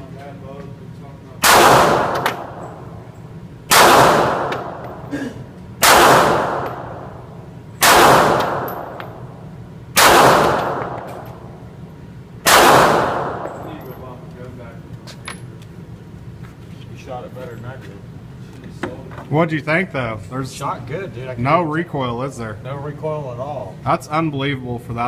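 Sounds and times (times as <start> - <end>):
pistol shots: 1.4 - 2.8, 3.7 - 5.1, 5.8 - 7.2, 7.8 - 9.3, 10.0 - 11.5, 12.4 - 13.6.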